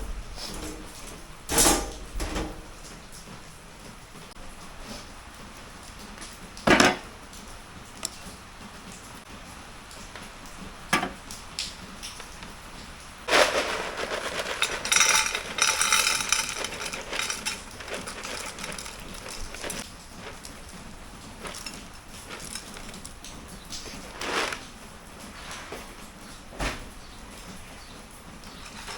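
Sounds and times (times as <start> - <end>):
metal pots and utensils clattering: 0.3 - 2.7, 6.7 - 7.1, 10.9 - 11.4, 13.3 - 24.7, 28.4 - 28.9
kitchenware knocking: 6.7 - 7.1, 11.0 - 11.2.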